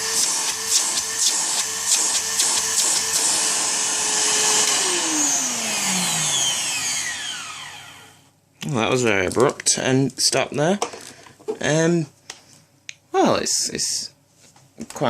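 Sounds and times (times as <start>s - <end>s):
vacuum cleaner whining: 0.0s - 8.3s.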